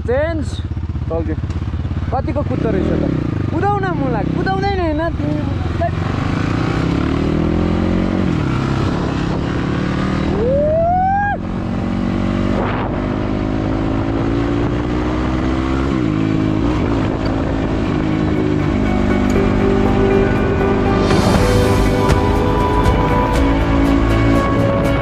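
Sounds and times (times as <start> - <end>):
motorcycle engine accelerating: 0.0 - 25.0
wind rush: 12.3 - 15.1, 20.3 - 25.0.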